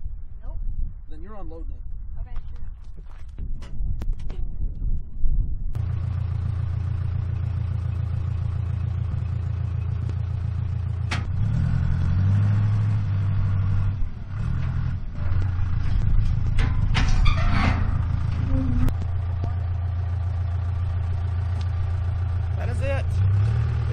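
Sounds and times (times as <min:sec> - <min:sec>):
engine running and revving: 0:05.7 - 0:23.9.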